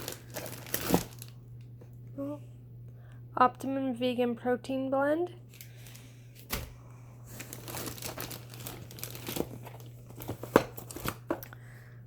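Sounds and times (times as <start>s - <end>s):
packaging crinkling and rustling: 0.0s - 1.4s, 7.3s - 11.5s.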